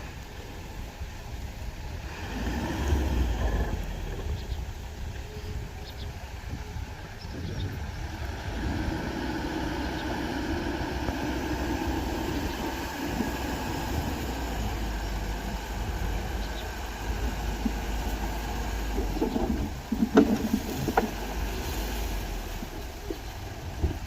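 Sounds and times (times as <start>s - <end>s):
bulldozer diesel engine running: 0.0s - 24.0s.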